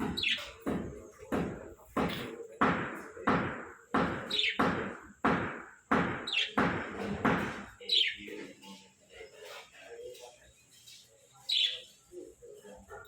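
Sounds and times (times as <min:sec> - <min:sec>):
heavy ringing knocks: 0:00.0 - 0:07.7.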